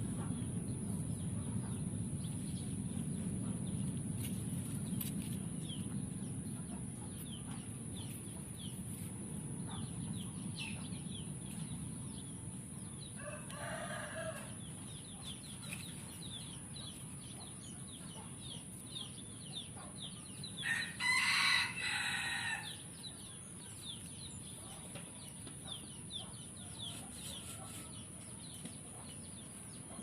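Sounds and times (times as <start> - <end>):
rooster crowing: 13.2 - 14.6, 20.6 - 22.9.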